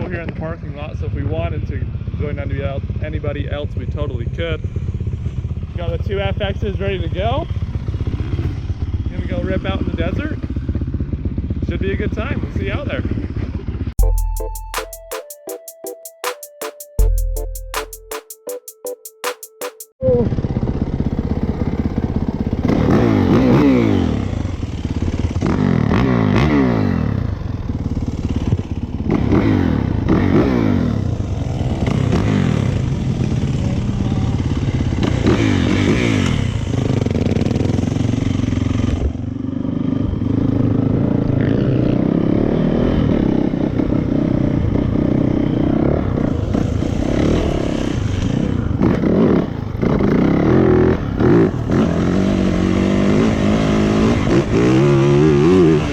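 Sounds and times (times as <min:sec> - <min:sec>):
motorcycle engine accelerating: 0:20.1 - 0:55.9.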